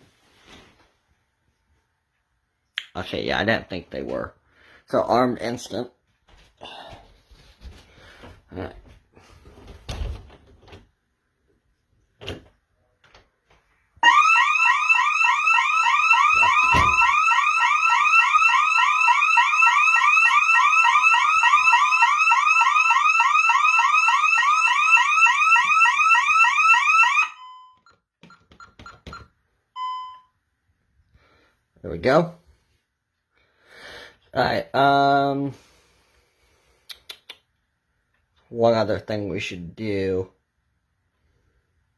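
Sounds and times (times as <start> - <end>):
alarm siren whooping: 14.0 - 27.8.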